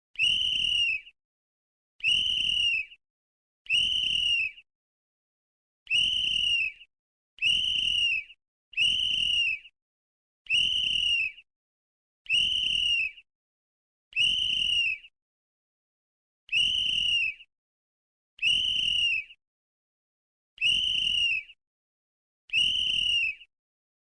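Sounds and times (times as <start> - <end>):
whistle blasts: 0.2 - 1.1, 2.0 - 2.8, 3.7 - 4.6, 5.9 - 9.7, 10.5 - 11.4, 12.3 - 13.2, 14.2 - 15.1, 16.5 - 17.4, 18.4 - 19.3, 20.6 - 21.5, 22.5 - 23.5.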